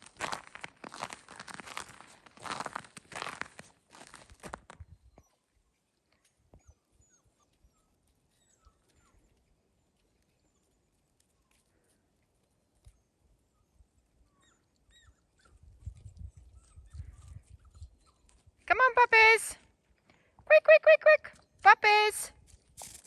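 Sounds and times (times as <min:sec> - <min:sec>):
puppies whimpering and squeaking: 0:06.2 - 0:09.4, 0:12.8 - 0:18.6.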